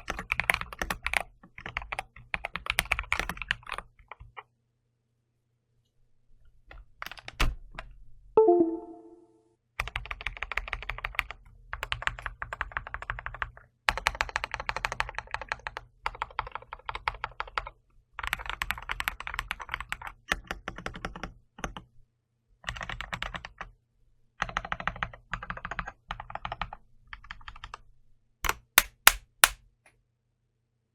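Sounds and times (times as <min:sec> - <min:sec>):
short pitched sound: 0:08.4 - 0:09.4
keyboard typing: 0:28.5 - 0:29.6
sharp loud clicks: 0:28.5 - 0:29.6.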